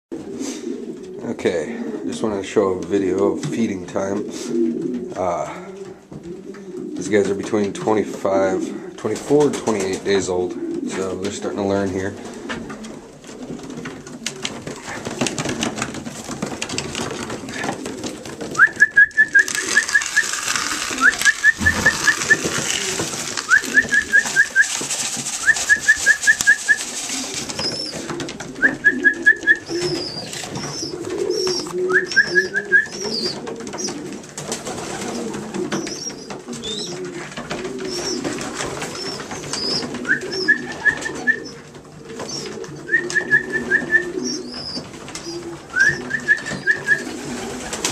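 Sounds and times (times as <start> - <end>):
pigeons cooing: 0.1 - 9.0, 9.7 - 47.9
young pigeons squeaking: 11.9 - 47.9
hissing rustle: 19.3 - 28.3.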